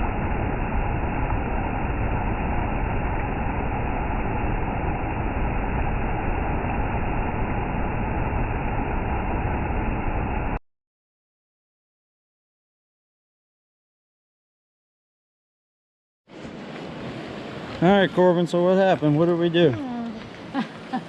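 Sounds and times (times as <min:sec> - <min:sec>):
waterfall rushing: 0:16.3 - 0:21.0.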